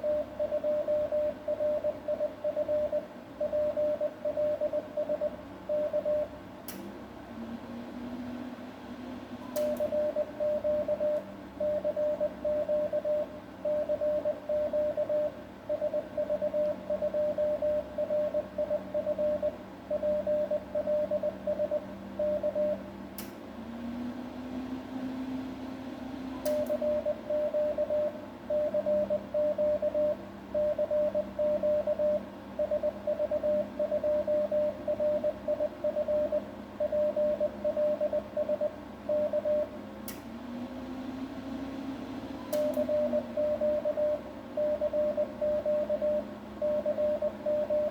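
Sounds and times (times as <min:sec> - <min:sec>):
low steady hum: 0:00.0 - 0:47.9
morse code tone: 0:09.8 - 0:22.8, 0:26.7 - 0:39.7, 0:42.7 - 0:47.9
sharp click: 0:23.2 - 0:23.4, 0:26.4 - 0:26.8, 0:42.5 - 0:42.9.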